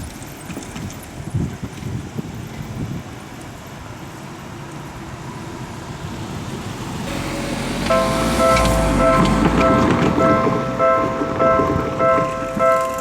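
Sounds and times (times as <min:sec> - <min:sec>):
road traffic rumbling: 0:03.9 - 0:13.0
electronic crossing warning bell: 0:07.0 - 0:13.0.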